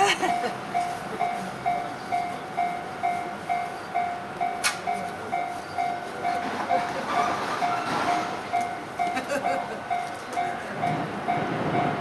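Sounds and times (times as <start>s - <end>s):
freight train rolling: 0.0s - 12.0s
level crossing bell clanging: 0.0s - 12.0s
sharp click: 4.6s - 4.9s.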